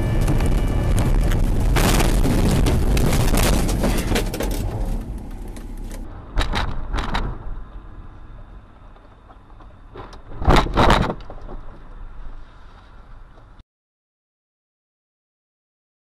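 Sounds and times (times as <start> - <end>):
dense crackling and clattering knocks: 0.0 - 7.4, 9.1 - 12.0
car noise: 0.0 - 13.6.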